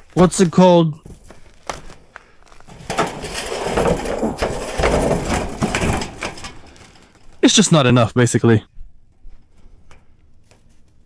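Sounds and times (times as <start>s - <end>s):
roofing sheet scraping: 1.2s - 7.5s.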